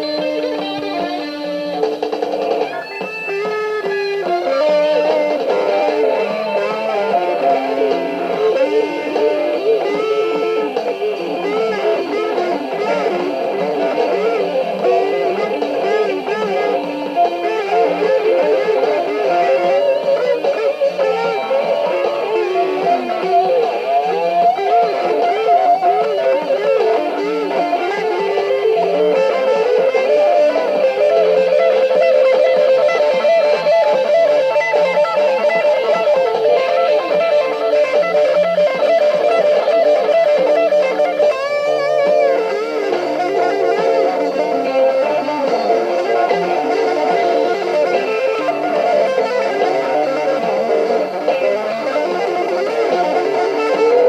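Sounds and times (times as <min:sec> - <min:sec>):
electric guitar lead: 0:00.0 - 0:54.0.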